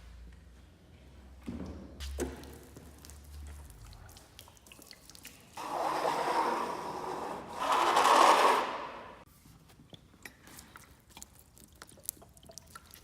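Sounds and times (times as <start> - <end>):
wooden boards scraping: 5.6 - 9.2.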